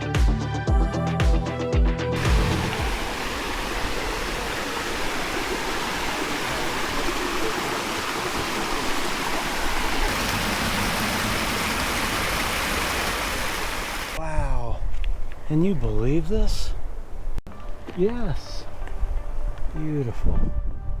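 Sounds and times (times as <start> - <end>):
strong wind blowing: 2.2 - 15.4, 18.7 - 21.0
wind buffeting on microphone: 18.6 - 21.0.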